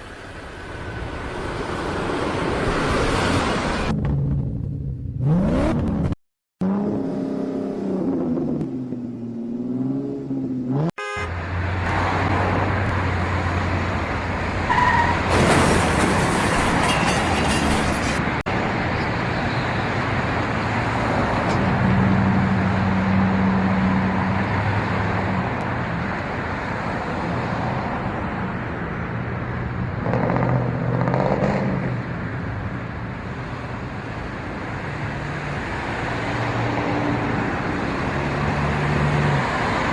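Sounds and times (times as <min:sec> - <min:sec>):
car horns honking: 0:10.9 - 0:11.4.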